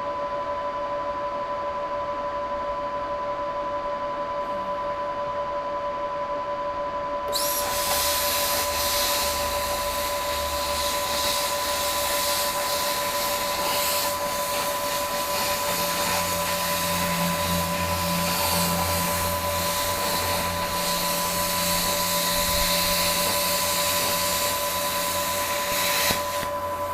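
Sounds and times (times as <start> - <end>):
plasma cutter hissing: 7.3 - 26.9
steady high tones: 7.3 - 26.9.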